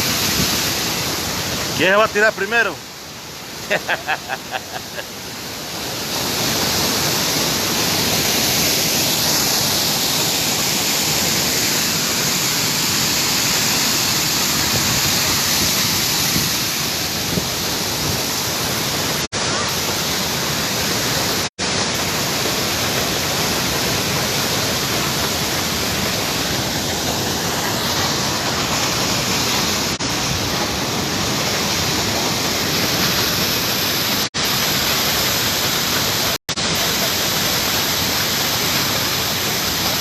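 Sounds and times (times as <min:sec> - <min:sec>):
waterfall rushing: 0:00.0 - 0:40.0.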